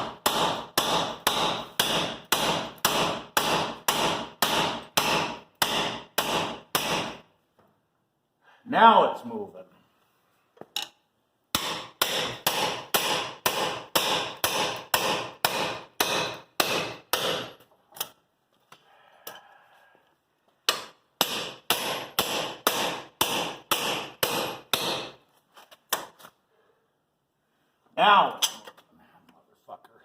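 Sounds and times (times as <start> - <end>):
hammer striking a chisel: 0.0 - 7.2, 10.8 - 18.1, 20.6 - 25.2.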